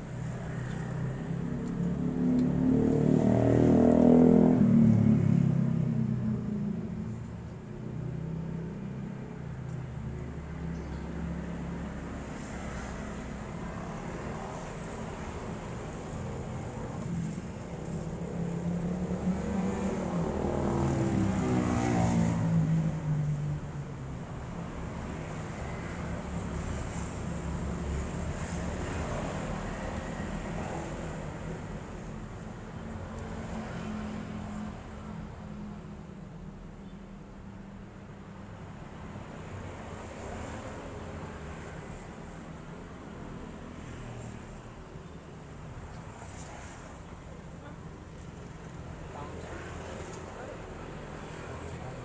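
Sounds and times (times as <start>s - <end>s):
vehicles passing on a road: 0.0s - 52.0s.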